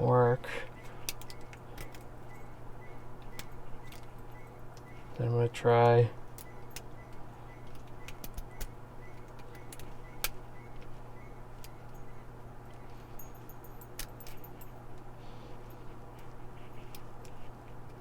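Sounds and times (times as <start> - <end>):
steady low hum: 0.0 - 18.0
lock pick clicking in padlock: 6.3 - 10.9.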